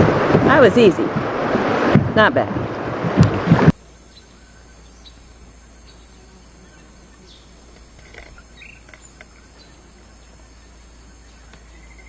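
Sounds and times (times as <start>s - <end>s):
insects droning: 0.0s - 12.0s
bird chirps: 4.0s - 12.0s.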